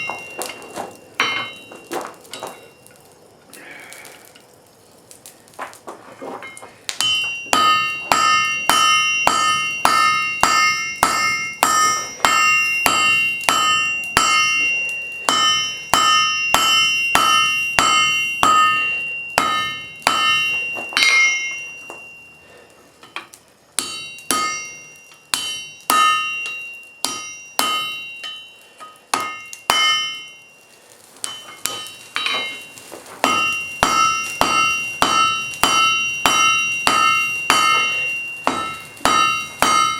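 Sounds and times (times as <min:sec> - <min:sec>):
hammer striking iron on anvil: 0:00.0 - 0:02.7, 0:06.4 - 0:22.3, 0:23.0 - 0:30.6, 0:31.2 - 0:39.9.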